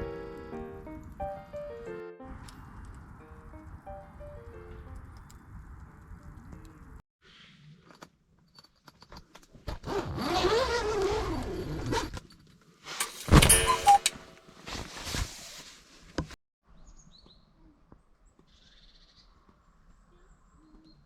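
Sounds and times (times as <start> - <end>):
loud ringing metal clank: 13.0 - 14.4
metal items clattering: 13.0 - 14.4.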